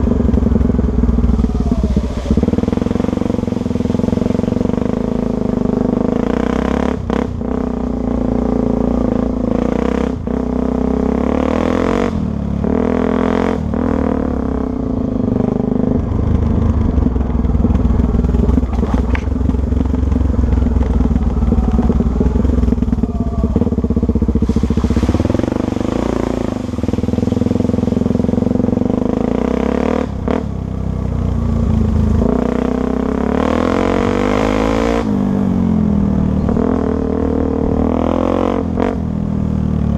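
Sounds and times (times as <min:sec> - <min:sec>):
motorcycle engine revving: 0:00.0 - 0:39.9
short knocks and clatter: 0:17.0 - 0:19.8.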